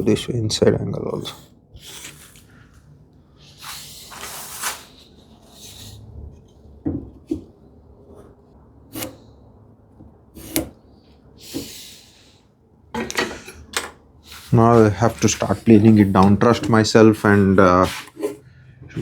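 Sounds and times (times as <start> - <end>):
wood scraping on bench: 8.9 - 9.2, 10.3 - 10.8, 13.0 - 19.0.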